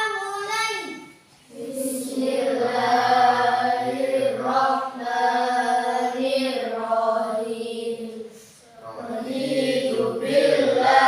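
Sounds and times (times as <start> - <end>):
children chanting in unison: 1.5 - 11.0.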